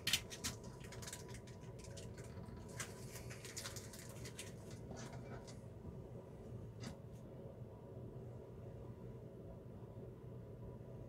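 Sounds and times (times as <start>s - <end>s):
small clicks and scratches: 0.0s - 5.6s
low steady hum: 0.0s - 11.0s.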